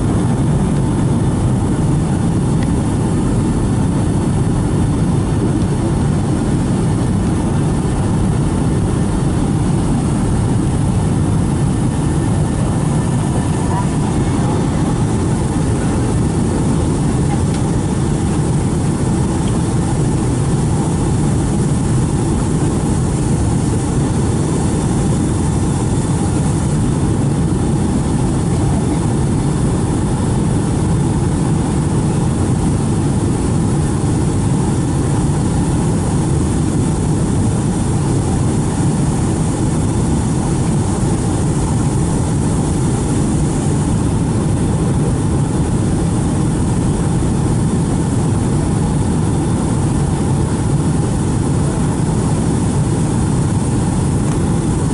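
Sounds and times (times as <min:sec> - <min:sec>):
airplane cabin engine roar: 0:00.0 - 0:54.9.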